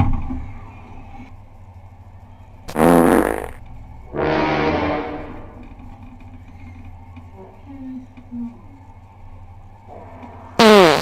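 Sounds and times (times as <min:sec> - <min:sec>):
loud burps: 0:02.7 - 0:03.6, 0:10.6 - 0:11.0.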